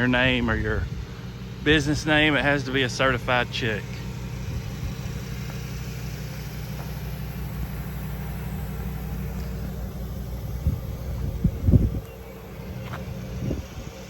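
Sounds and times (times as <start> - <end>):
truck engine running steadily: 0.0 - 14.0.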